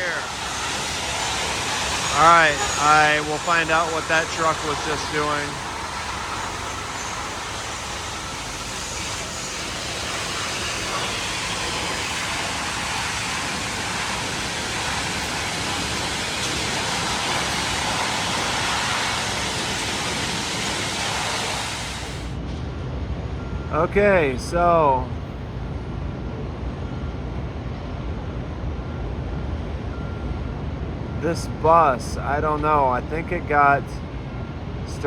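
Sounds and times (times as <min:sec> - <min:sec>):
sandblasting hiss: 0:00.0 - 0:22.4.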